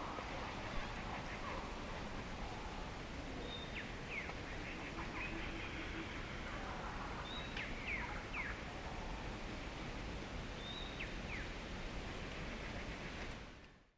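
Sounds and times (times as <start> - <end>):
steady background hiss: 0.0 - 13.9
bird calls with falling notes: 7.2 - 8.6.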